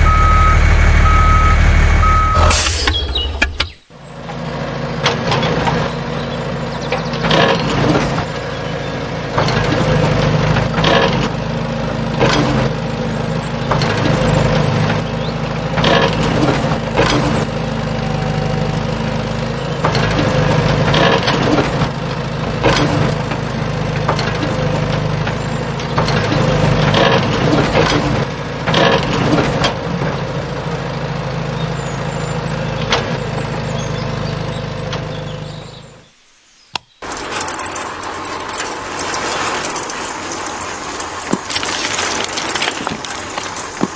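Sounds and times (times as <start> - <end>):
stones cracking and clattering: 37.0 - 43.9.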